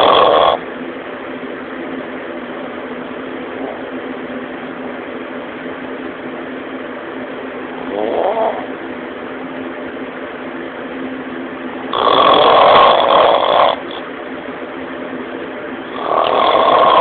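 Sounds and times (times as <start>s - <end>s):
man snoring: 0.0s - 0.6s, 7.8s - 8.7s, 11.9s - 14.0s, 15.9s - 17.0s
steady hum: 0.0s - 17.0s.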